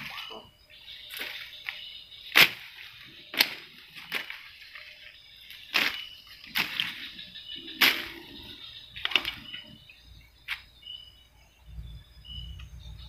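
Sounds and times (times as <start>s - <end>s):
water splashing: 2.3s - 9.6s.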